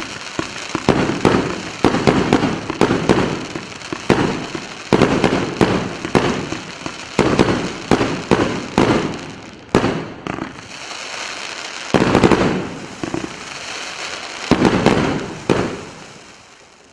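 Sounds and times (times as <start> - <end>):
crackling hissing sparks: 0.0 - 16.9
firework bangs: 0.0 - 16.9.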